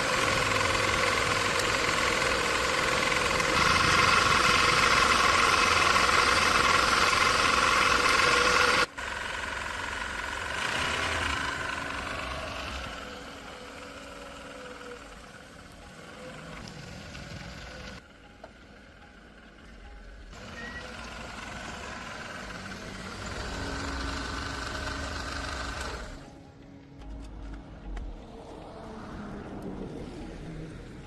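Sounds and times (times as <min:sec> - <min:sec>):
motor running: 0:00.0 - 0:18.0, 0:20.3 - 0:26.4
quieter machine sound: 0:00.0 - 0:26.8.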